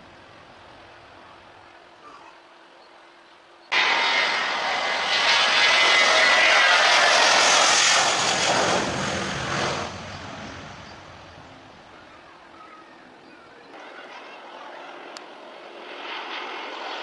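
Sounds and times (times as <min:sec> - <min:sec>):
passenger jet passing: 0:03.7 - 0:12.6, 0:13.8 - 0:17.0.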